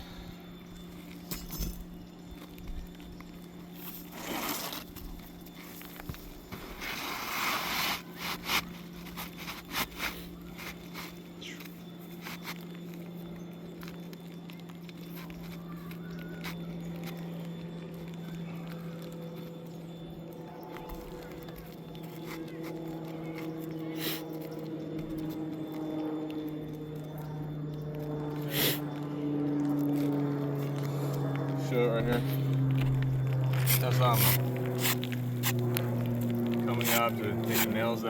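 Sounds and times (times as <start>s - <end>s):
steady low hum: 0.0s - 38.0s
hand tools scraping shingles: 3.8s - 12.7s, 30.9s - 38.0s.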